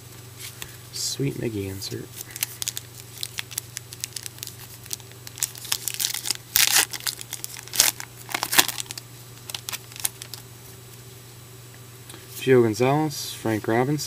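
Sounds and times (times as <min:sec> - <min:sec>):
plastic wrapper crinkling and tearing: 0:02.2 - 0:10.4.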